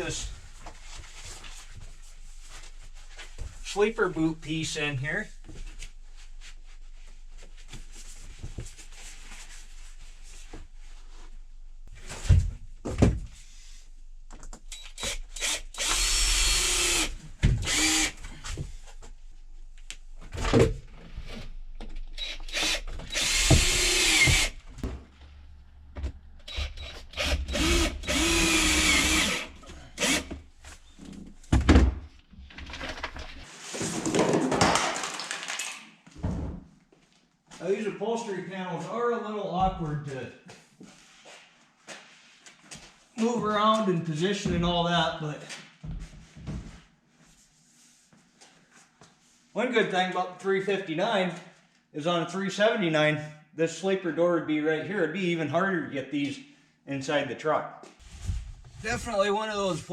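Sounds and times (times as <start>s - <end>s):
power drill running: 15.0s - 18.2s, 22.2s - 24.6s, 26.5s - 30.3s.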